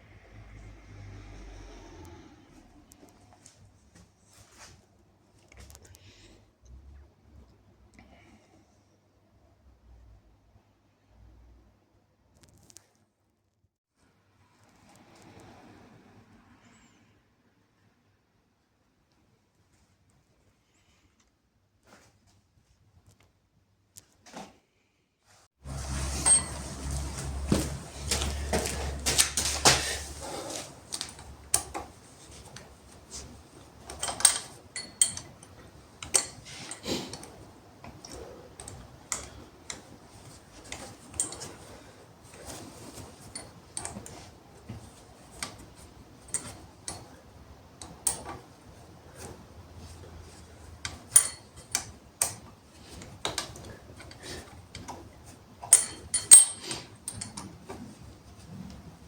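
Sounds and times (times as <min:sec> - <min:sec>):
clicks and metallic taps of tools: 0:26.3 - 0:39.9, 0:47.8 - 0:48.4, 0:50.8 - 0:57.8.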